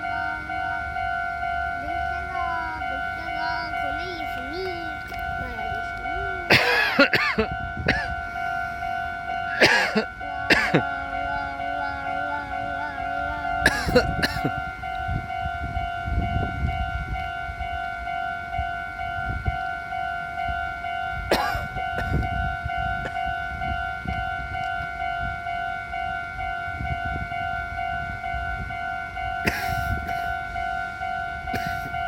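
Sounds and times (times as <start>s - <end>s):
level crossing warning bell: 0.0s - 32.0s.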